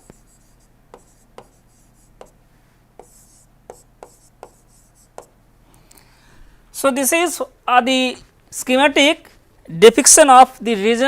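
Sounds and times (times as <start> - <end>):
pen scratching on paper: 0.0 - 2.4, 3.0 - 5.3
pen tapping down: 0.9 - 1.6, 3.0 - 5.3.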